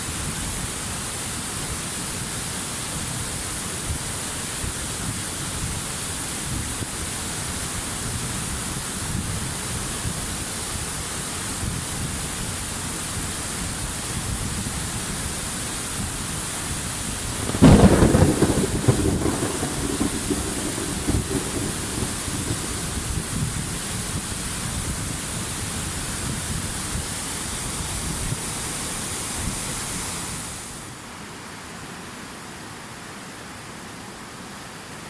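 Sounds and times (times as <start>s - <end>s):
rushing water hiss: 0.0s - 35.0s
thunder clap rumbling: 17.1s - 24.4s.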